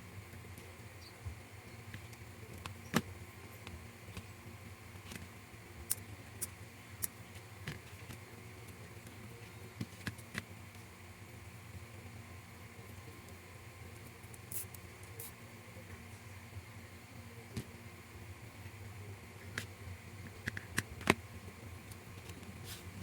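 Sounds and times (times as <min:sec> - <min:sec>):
low room hum: 0:00.0 - 0:23.0.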